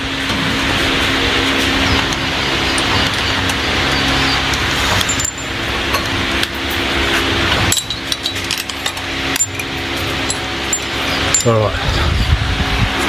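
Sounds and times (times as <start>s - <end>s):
steady mechanical hum: 0.0s - 13.0s
metallic chain clinks: 4.7s - 6.0s, 7.5s - 11.6s.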